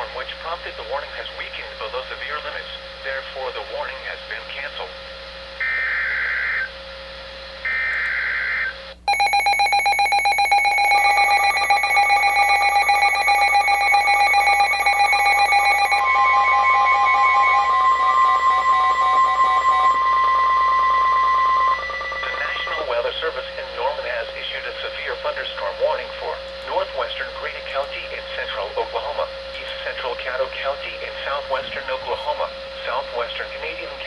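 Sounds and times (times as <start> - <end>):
pulsing electronic alert beeps: 9.1 - 23.0
harsh digital data bursts: 9.1 - 23.2
long steady alert tone: 9.1 - 23.8.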